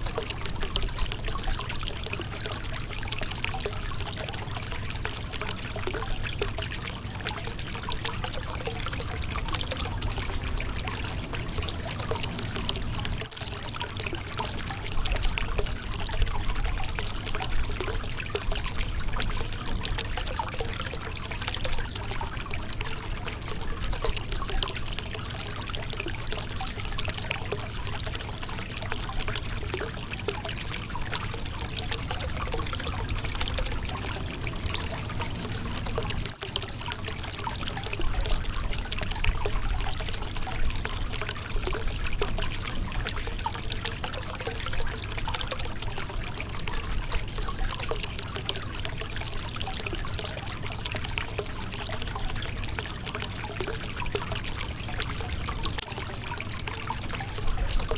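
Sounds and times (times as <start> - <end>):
river water over rocks: 8.0 - 16.6, 30.2 - 57.9.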